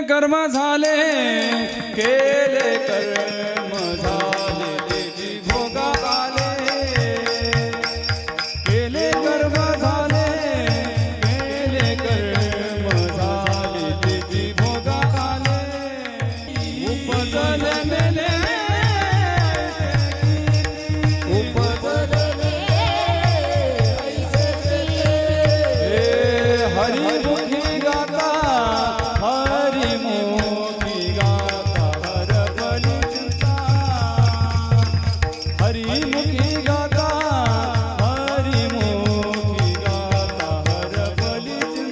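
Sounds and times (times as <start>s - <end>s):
man singing long held notes: 0.0s - 41.9s
hand drum beat: 16.6s - 41.9s.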